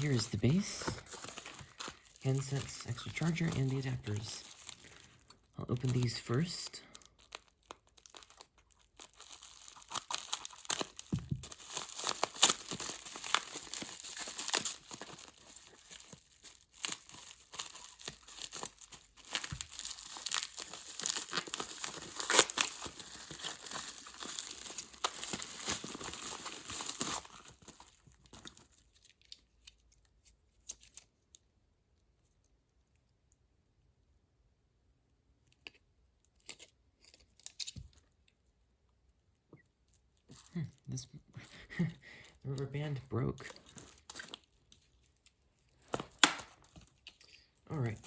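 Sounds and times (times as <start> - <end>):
packaging wrap crinkling and tearing: 0.0 - 29.9, 40.2 - 48.0.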